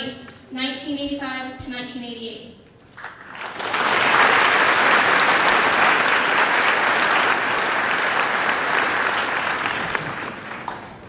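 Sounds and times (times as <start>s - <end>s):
audience applauding: 3.0s - 11.0s.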